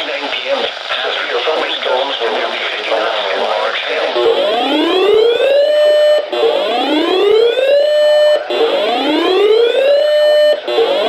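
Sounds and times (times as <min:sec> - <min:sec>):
electronic whoop alarm: 0:04.2 - 0:11.0.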